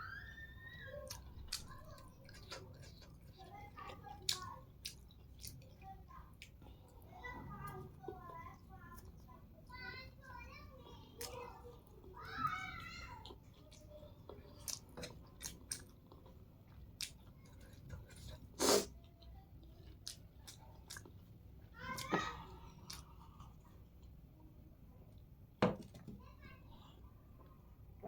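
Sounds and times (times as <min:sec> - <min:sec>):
chewing and mouth sounds: 0:01.0 - 0:07.0, 0:13.0 - 0:24.2.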